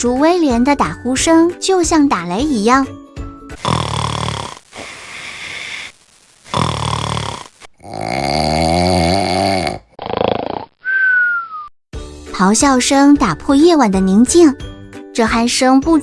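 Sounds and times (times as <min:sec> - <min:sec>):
loud snoring: 0:03.5 - 0:05.9, 0:06.5 - 0:10.8.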